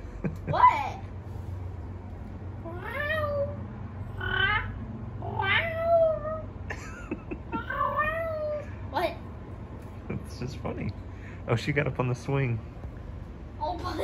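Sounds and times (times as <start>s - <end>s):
cat meowing: 4.2s - 6.4s.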